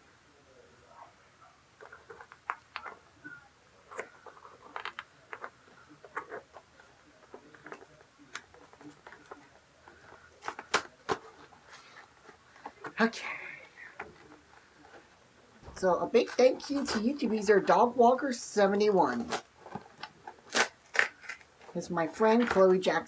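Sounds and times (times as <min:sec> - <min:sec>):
package being opened by hand: 0:19.3 - 0:21.7.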